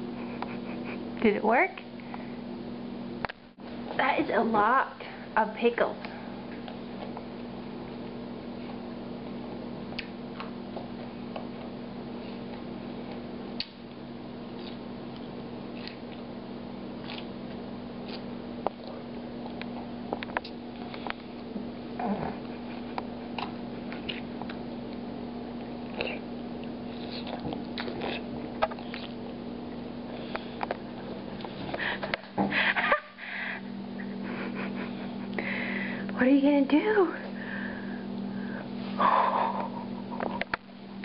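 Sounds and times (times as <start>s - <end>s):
steady low hum: 0.0s - 41.0s
child chewing pickles: 6.6s - 21.6s, 22.4s - 32.2s.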